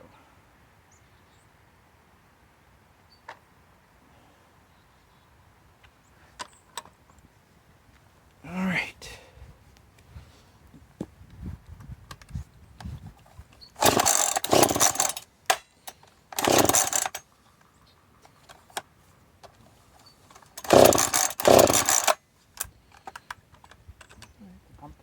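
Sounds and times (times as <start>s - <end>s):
chainsaw bursts: 13.8s - 17.3s, 20.5s - 22.2s.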